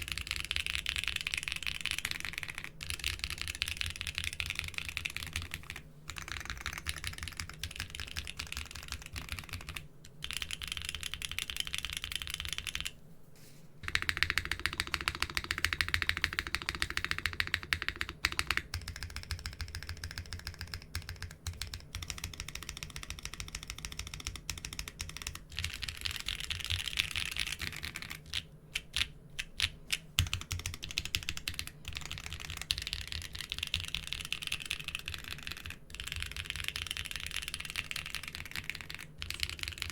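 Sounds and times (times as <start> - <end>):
mechanical keyboard typing: 0.0 - 13.0, 13.8 - 39.9.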